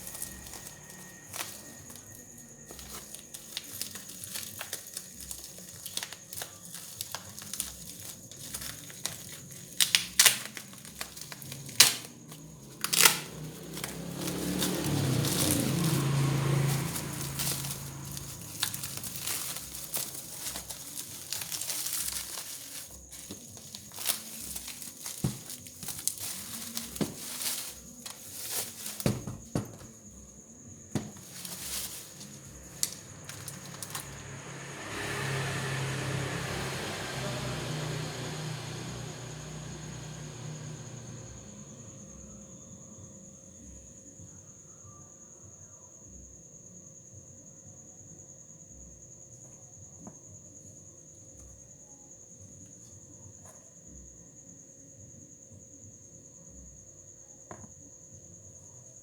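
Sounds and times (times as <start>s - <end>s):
crinkling rustle: 0.0s - 30.2s, 30.9s - 34.4s
handling clicks and knocks: 2.7s - 30.0s.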